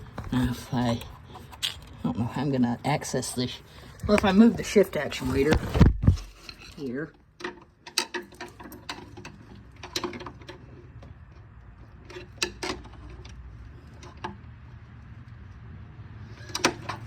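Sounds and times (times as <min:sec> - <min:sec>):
mechanical clicks and clunks: 0:05.2 - 0:13.4, 0:16.4 - 0:17.0.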